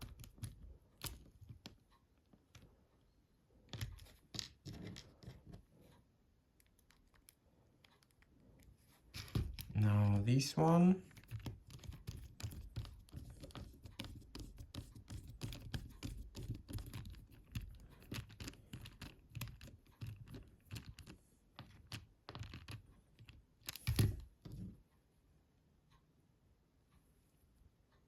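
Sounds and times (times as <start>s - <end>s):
screwdriver clicking and scratching: 0.0s - 2.7s, 6.6s - 10.2s, 11.1s - 24.3s.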